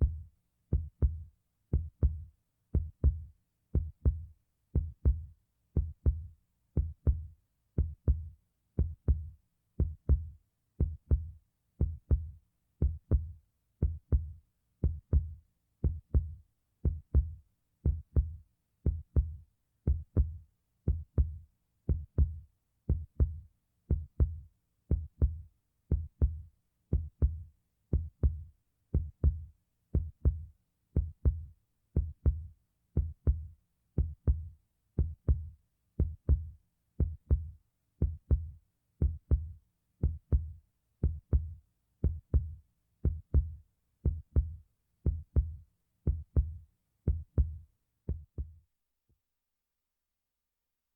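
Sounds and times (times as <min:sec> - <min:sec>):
heartbeat thumps: 0:00.8 - 0:01.2, 0:01.8 - 0:48.6.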